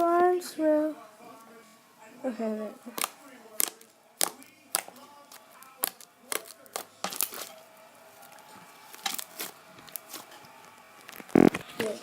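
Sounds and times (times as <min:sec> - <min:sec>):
slime popping and snapping: 0:02.9 - 0:07.5.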